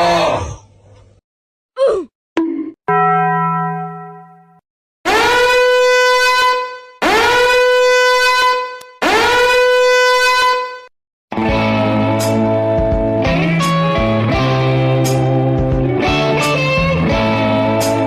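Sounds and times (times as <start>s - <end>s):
loud horn-like blasts: 5.1s - 10.9s.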